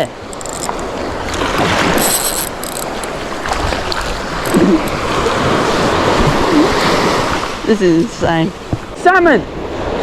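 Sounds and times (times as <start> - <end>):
water washing around kayak: 0.0 - 10.0
wind on microphone: 0.0 - 10.0.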